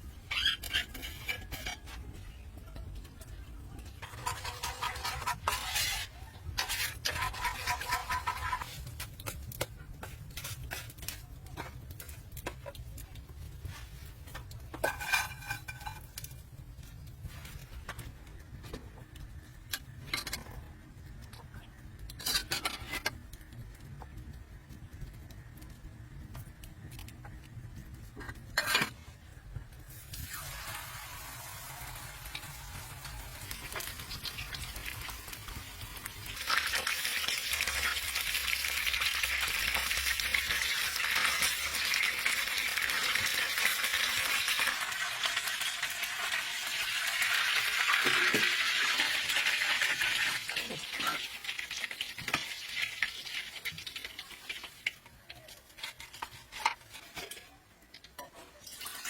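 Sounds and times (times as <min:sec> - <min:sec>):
food sizzling in a pan: 0:04.0 - 0:08.8, 0:29.9 - 0:57.0.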